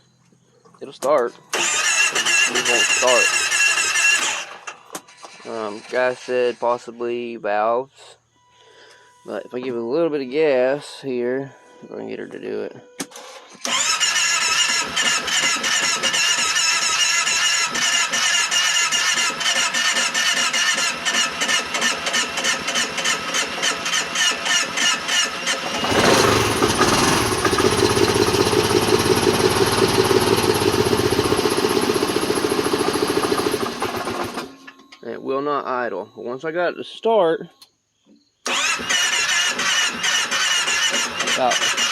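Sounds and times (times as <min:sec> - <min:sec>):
engine cranking on starter: 0:01.2 - 0:06.1, 0:13.0 - 0:34.8, 0:38.4 - 0:41.9
engine running on throttle: 0:13.7 - 0:34.5.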